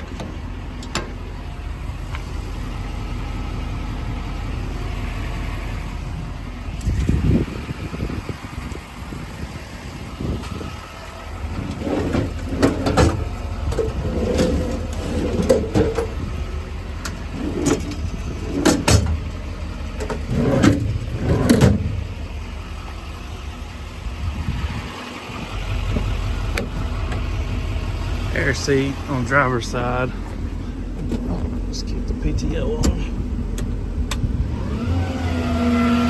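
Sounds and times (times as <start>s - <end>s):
steady low rumble: 0.0s - 34.6s
sharp clunks and knocks: 11.7s - 16.2s, 17.0s - 19.3s.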